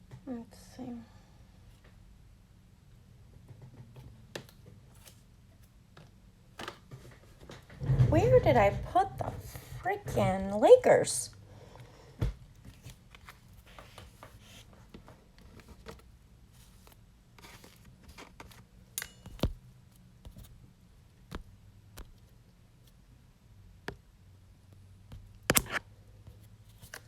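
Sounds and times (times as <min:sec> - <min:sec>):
low steady hum: 0:00.0 - 0:27.0
soft rustles of cards: 0:03.9 - 0:07.5, 0:11.6 - 0:23.0, 0:25.1 - 0:27.0.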